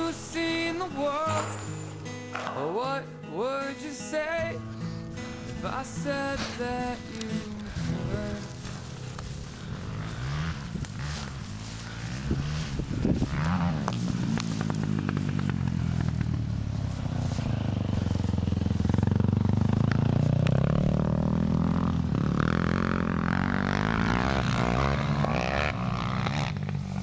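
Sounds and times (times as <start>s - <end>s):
engine running: 0.0s - 27.0s
clatter: 10.0s - 27.0s.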